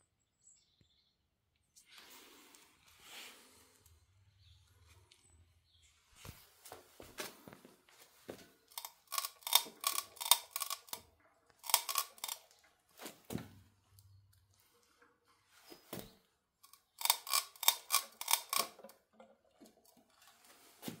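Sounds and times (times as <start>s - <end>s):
bike cracking clicks: 8.7s - 11.0s, 11.6s - 12.5s, 16.7s - 18.9s.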